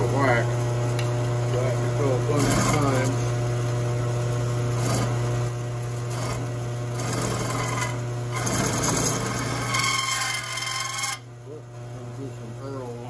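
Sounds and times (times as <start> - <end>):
drill press motor hum: 0.0 - 11.6
mill bit scraping metal: 2.1 - 3.3, 4.7 - 5.3, 6.0 - 11.3.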